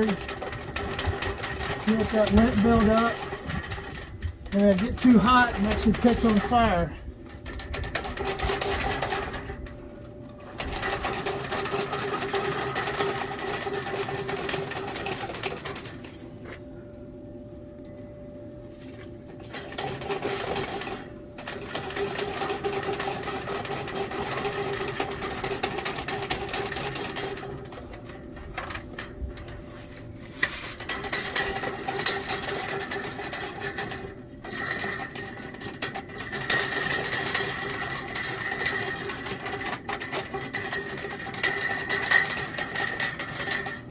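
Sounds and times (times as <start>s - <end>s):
fish tape rattling in duct: 0.0s - 9.8s
dryer humming: 0.0s - 43.9s.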